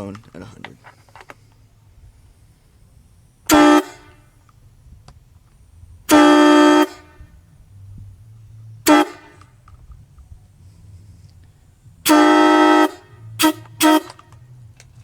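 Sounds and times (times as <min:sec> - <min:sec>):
train horn blasts: 0:03.5 - 0:04.4, 0:06.1 - 0:07.5, 0:08.8 - 0:09.6, 0:12.0 - 0:14.5.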